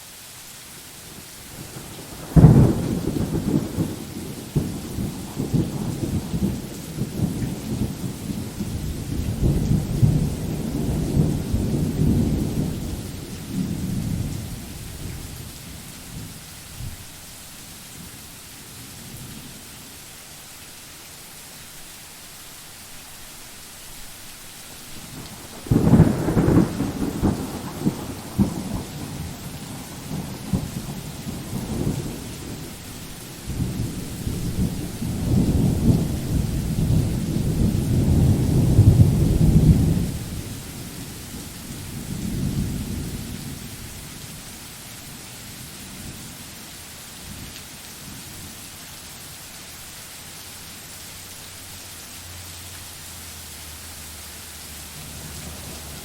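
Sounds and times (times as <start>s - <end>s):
steady rain hiss: 0.0s - 56.0s
thunder clap and rumble: 1.6s - 15.4s, 25.0s - 32.8s, 33.5s - 43.9s.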